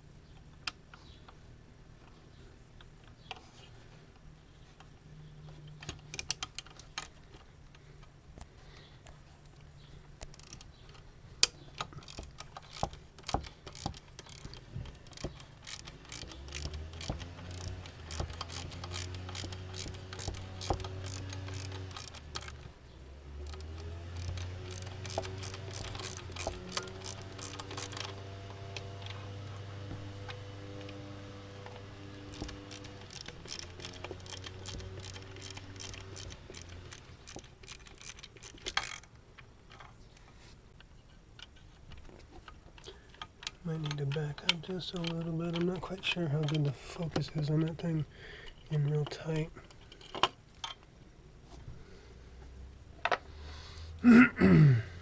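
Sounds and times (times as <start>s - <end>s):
hand tools clicking and knocking: 10.3s - 22.8s, 23.4s - 31.0s, 31.6s - 40.0s, 40.8s - 47.8s, 48.4s - 50.9s.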